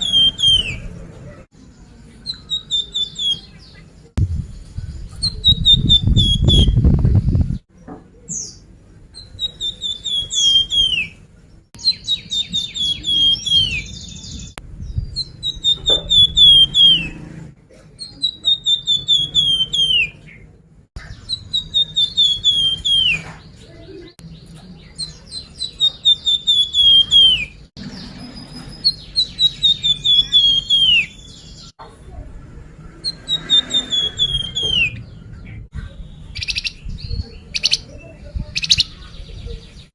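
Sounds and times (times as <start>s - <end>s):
songbird chirping: 0.0s - 39.9s
loud low rumble: 4.2s - 7.6s.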